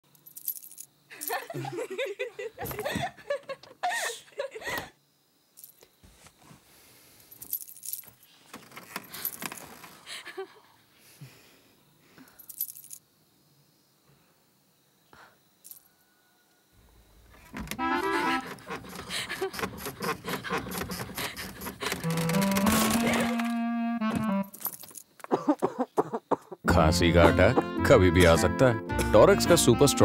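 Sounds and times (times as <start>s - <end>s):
light metallic jingling: 0.1s - 1.9s, 7.3s - 9.6s, 12.3s - 13.0s, 24.5s - 25.2s
laughter: 1.1s - 4.9s, 10.1s - 10.8s, 25.3s - 27.7s.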